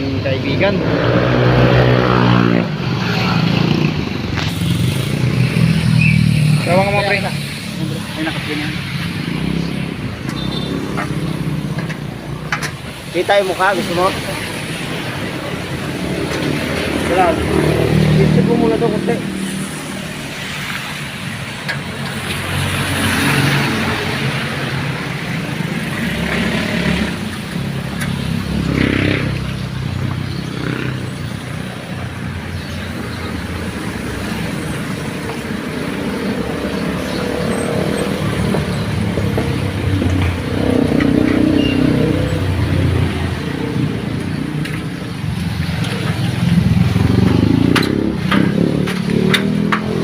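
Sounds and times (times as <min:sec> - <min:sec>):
vehicle engines rumbling: 0:00.0 - 0:50.0.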